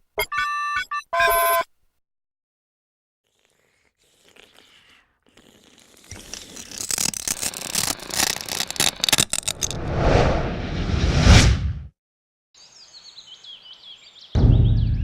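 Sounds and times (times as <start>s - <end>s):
whoosh: 9.6s - 11.9s.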